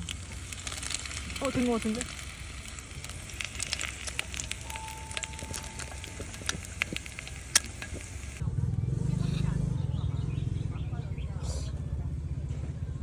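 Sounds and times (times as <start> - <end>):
rice paper frying in oil: 0.0 - 8.4.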